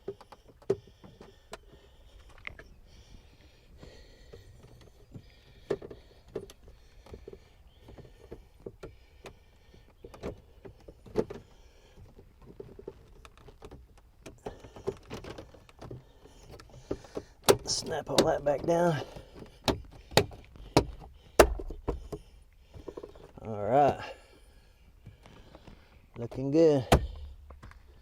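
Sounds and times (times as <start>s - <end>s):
car trim parts knocking and clicking: 4.3s - 24.2s, 26.3s - 28.0s.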